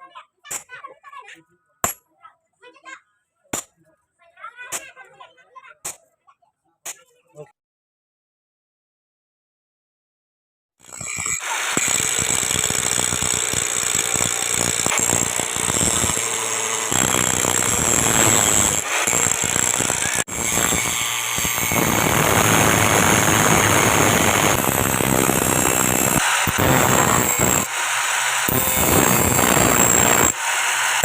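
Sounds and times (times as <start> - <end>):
power tools hammering and grinding steel: 10.8 - 31.0.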